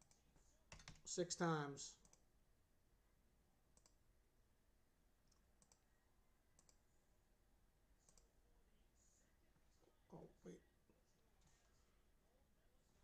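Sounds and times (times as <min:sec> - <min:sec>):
computer mouse clicks: 0:00.0 - 0:01.1, 0:02.0 - 0:02.3, 0:03.7 - 0:04.0, 0:05.2 - 0:05.8, 0:06.6 - 0:06.8, 0:08.0 - 0:08.3.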